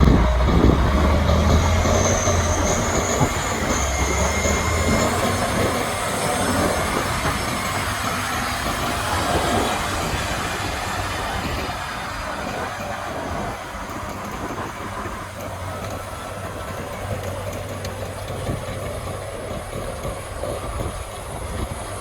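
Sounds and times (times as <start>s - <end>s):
thin high whine: 0.0s - 13.4s
tractor engine drone: 0.0s - 22.0s.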